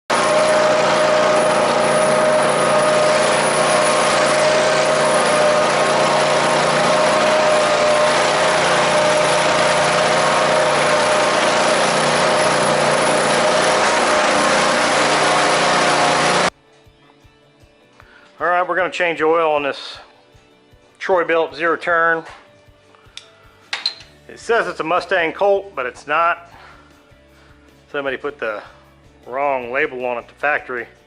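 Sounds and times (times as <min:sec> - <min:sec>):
mower engine running: 0:00.1 - 0:16.5.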